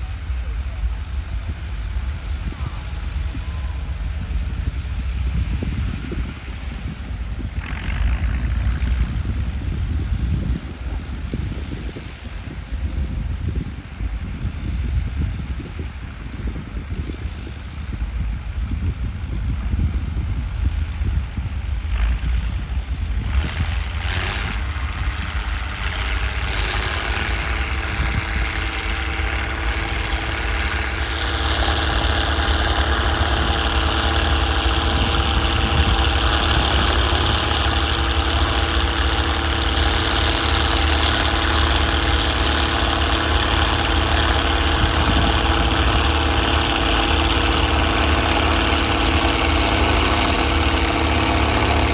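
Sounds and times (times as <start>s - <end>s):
diesel tractor engine running: 0.0s - 51.9s.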